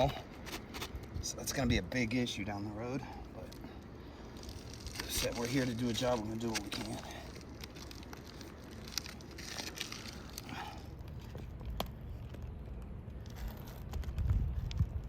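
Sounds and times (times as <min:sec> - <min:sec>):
low steady rumble: 0:00.0 - 0:15.0
roof shingles crinkling: 0:03.2 - 0:15.0.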